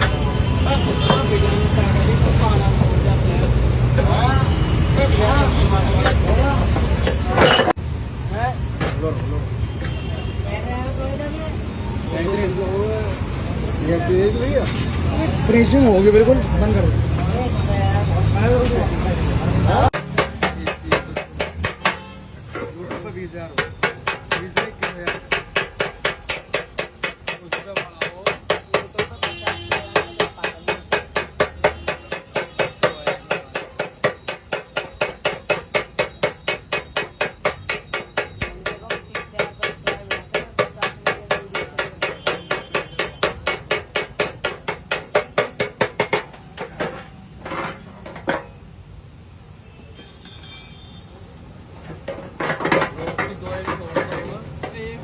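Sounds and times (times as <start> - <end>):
hammering on sheet steel tank: 20.0 - 47.6.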